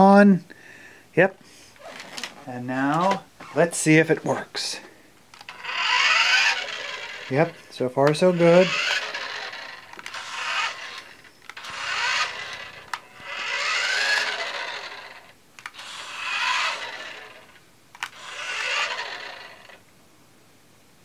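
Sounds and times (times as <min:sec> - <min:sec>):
toy car electric motor whirring: 0:05.4 - 0:19.8.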